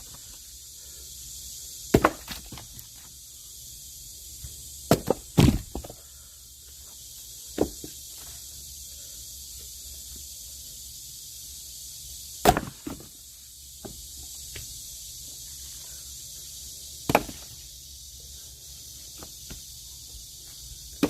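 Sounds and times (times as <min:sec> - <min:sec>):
axe chopping wooden logs: 0:01.9 - 0:02.8, 0:04.9 - 0:06.0, 0:12.4 - 0:13.1, 0:17.0 - 0:17.6.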